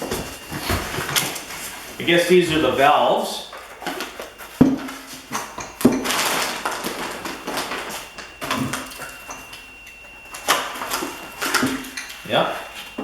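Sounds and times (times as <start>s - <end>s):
packaging rustling: 3.6s - 9.3s.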